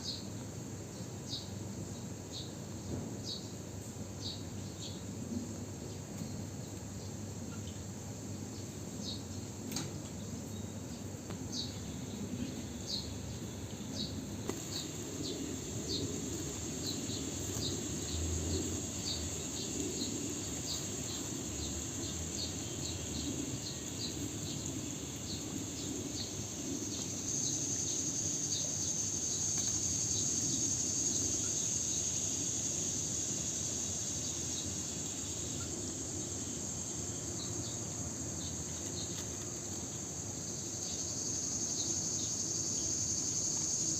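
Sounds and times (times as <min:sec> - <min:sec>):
insects chirping: 0:00.0 - 0:43.9
high-pitched insect buzz: 0:14.0 - 0:39.2.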